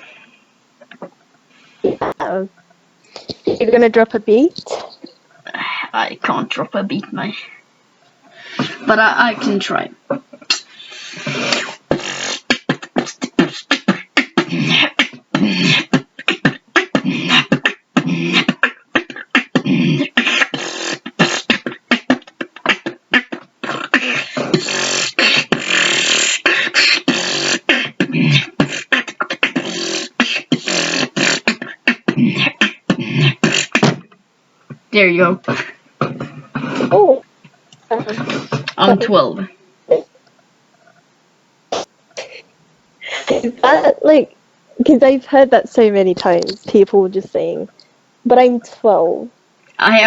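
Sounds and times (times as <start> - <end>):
person beatboxing: 1.8 - 2.5, 4.5 - 5.6, 10.5 - 34.8, 35.4 - 37.0.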